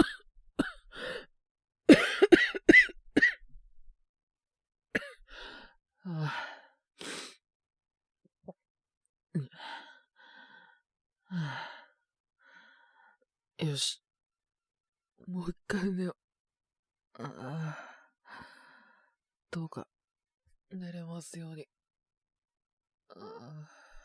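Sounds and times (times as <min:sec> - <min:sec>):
man coughing harshly: 0:00.0 - 0:00.8, 0:01.9 - 0:03.4, 0:05.0 - 0:05.2.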